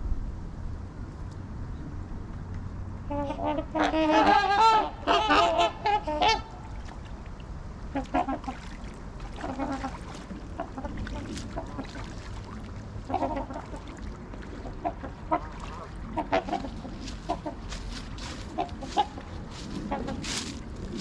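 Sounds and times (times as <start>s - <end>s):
waterfowl honking: 3.1s - 6.7s, 7.9s - 21.0s.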